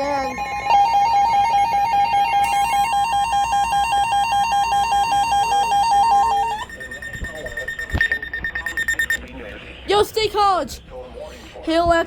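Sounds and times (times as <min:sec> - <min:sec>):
steady high tone: 0:00.0 - 0:09.3
warbling emergency alert tone: 0:00.0 - 0:09.3.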